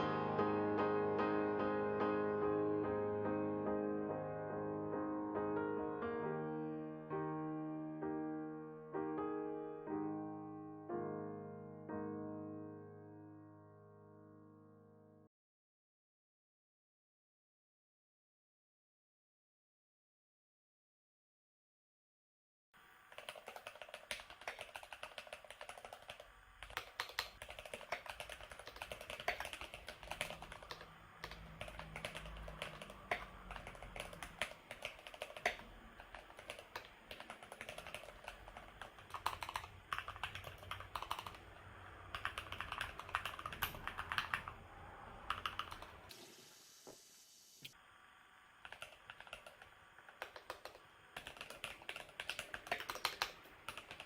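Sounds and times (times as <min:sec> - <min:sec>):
typing on mechanical keyboard: 0:23.1 - 0:44.6, 0:45.2 - 0:46.0, 0:48.6 - 0:54.0.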